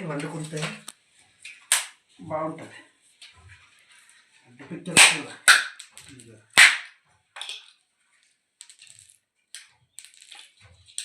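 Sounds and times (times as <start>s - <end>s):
shell pieces and seeds rattling: 8.6s - 11.0s.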